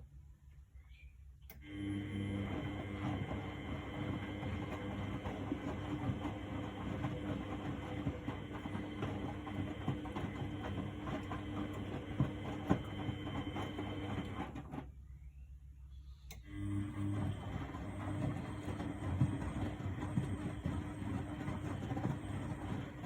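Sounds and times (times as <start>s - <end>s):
washing machine motor hum: 1.4s - 23.0s
wet laundry tumbling clatter: 2.4s - 14.8s, 16.9s - 23.0s.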